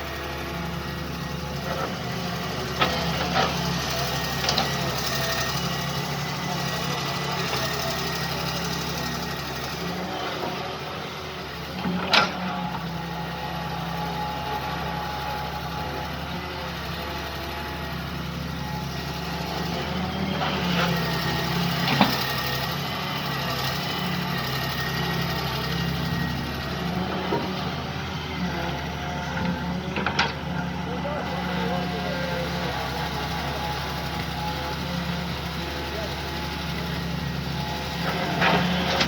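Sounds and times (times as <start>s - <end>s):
excavator engine running: 0.0s - 39.0s.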